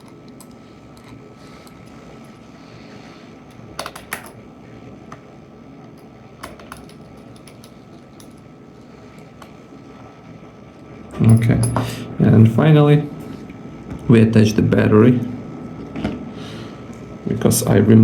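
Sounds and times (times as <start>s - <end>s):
screwdriver clicks and taps: 3.8s - 4.4s.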